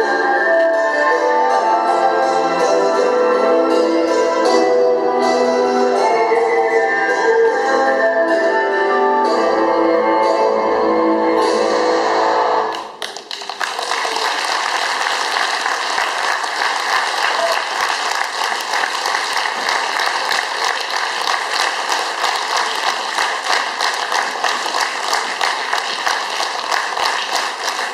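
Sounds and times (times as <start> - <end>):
audience applauding: 12.7 - 27.9.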